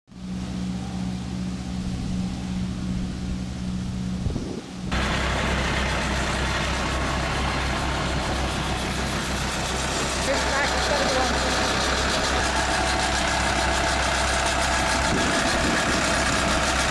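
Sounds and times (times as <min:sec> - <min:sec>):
engine humming: 0:00.1 - 0:16.9
rattling noise: 0:04.9 - 0:16.9.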